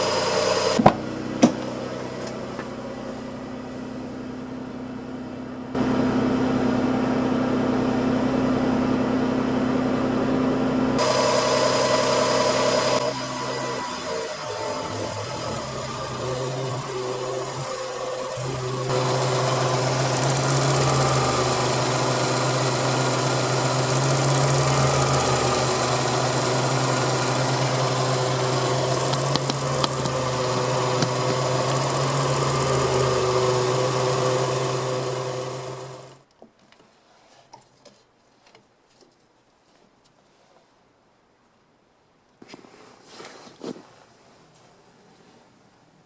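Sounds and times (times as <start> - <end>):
car engine running: 0.0 - 36.2.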